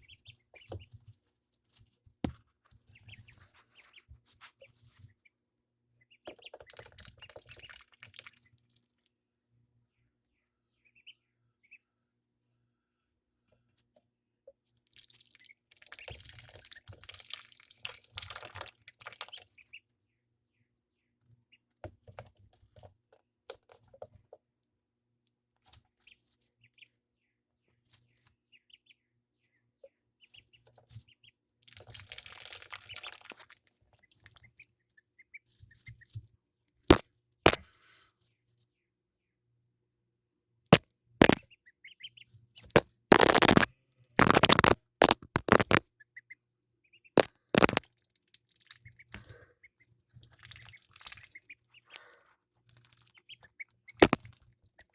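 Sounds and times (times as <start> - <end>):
ducklings peeping: 0.0 - 1.0, 2.8 - 5.3, 32.4 - 33.3, 43.1 - 46.4, 47.0 - 47.8
scuffling: 43.1 - 45.8.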